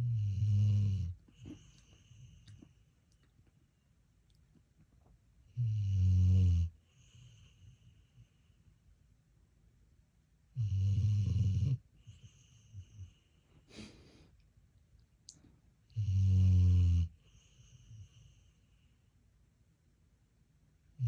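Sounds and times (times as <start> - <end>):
loud low snores: 0.0 - 1.6, 5.6 - 7.4, 10.6 - 11.8, 16.0 - 17.1
soft breathing: 1.0 - 4.0, 11.9 - 14.4.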